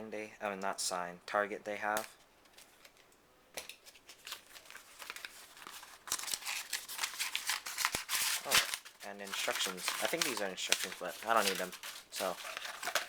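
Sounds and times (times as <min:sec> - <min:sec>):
paper and packaging rustling: 0:02.1 - 0:13.0.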